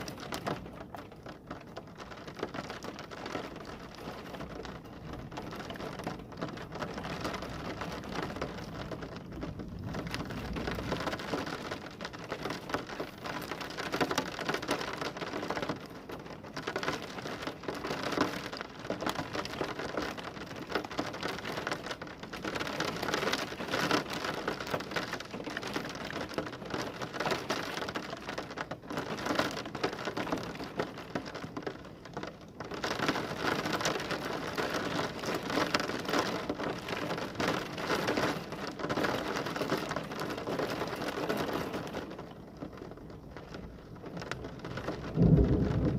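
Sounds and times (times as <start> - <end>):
heavy rain: 0.0 - 45.9
low rumble of thunder: 3.6 - 13.9, 43.1 - 45.9.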